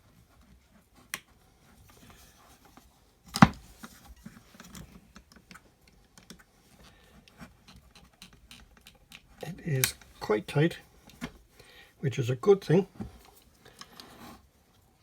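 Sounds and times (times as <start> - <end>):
screwdriver clicking and scraping: 7.6 - 10.1.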